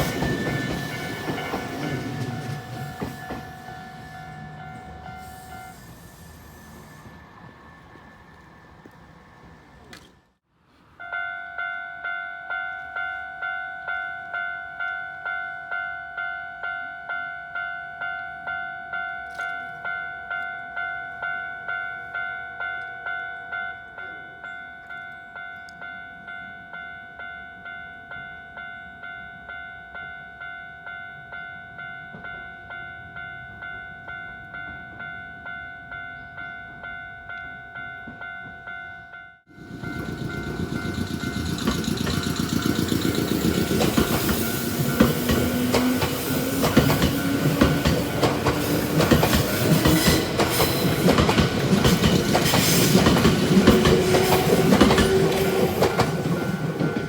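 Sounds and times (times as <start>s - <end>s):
level crossing alarm bell: 0.0s - 5.8s
train wheels clattering on rails: 0.0s - 5.9s, 39.5s - 57.0s
train motor whine: 0.0s - 10.2s, 39.5s - 57.0s.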